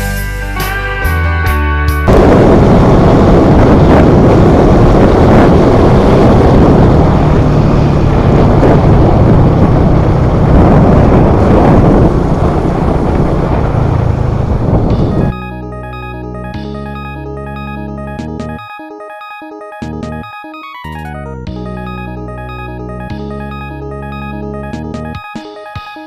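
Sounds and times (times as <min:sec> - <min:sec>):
wind rushing over microphone: 0:02.1 - 0:15.4
vehicle engine running: 0:02.1 - 0:18.6, 0:20.9 - 0:25.3.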